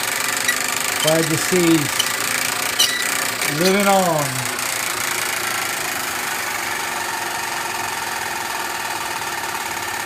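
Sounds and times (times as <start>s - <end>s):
electrical hum and buzz: 0.0s - 6.9s.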